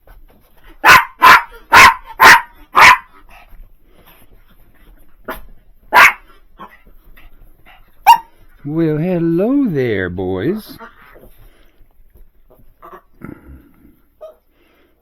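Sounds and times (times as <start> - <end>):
dog barking: 0.8 - 3.2, 5.3 - 6.8, 8.0 - 8.3.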